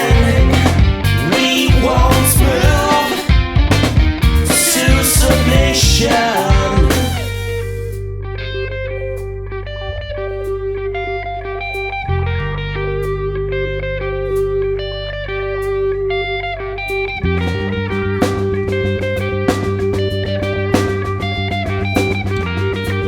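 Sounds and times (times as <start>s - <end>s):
drum beat: 0.0s - 7.6s
guitar instrumental: 0.0s - 23.0s.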